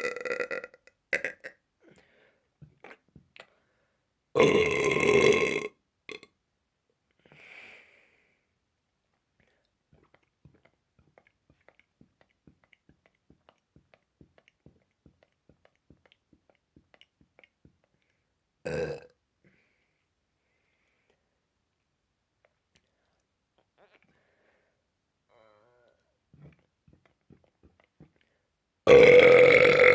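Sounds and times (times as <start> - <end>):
person burping loudly: 0.0 - 1.6, 4.4 - 6.3, 18.7 - 19.1, 28.9 - 29.9
soft breathy sound: 7.1 - 8.6, 19.4 - 21.6, 22.5 - 27.0.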